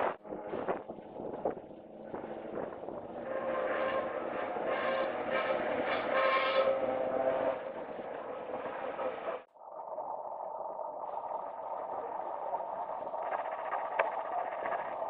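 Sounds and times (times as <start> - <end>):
electric tram rumbling on rails: 0.0 - 9.5
dull steady running sound: 11.0 - 15.0.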